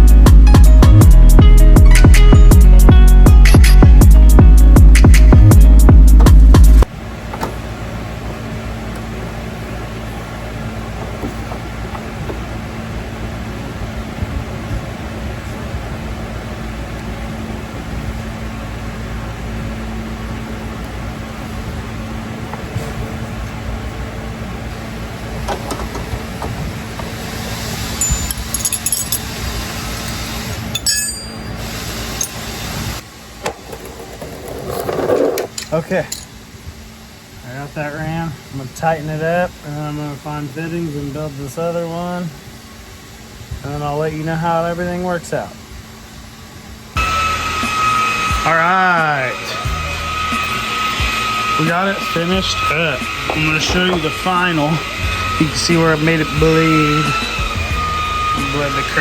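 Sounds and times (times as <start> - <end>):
electronic music: 0.0 - 6.8
mechanical hum with hiss: 6.2 - 59.0
light metallic clinks: 28.0 - 29.3, 30.8 - 31.6
machine humming: 46.6 - 59.0.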